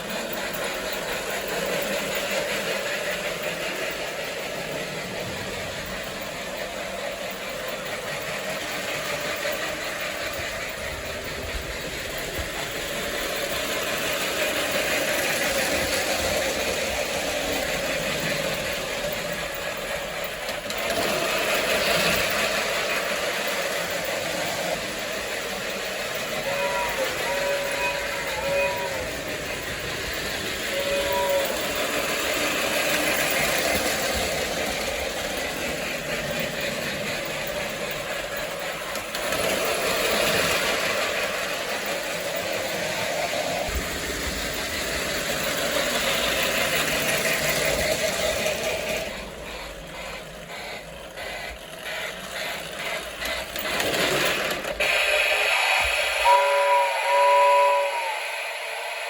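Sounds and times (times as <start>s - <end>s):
toy steam locomotive chuffing: 0.0s - 59.0s
two-tone electronic horn blast: 26.5s - 29.2s, 56.2s - 58.2s.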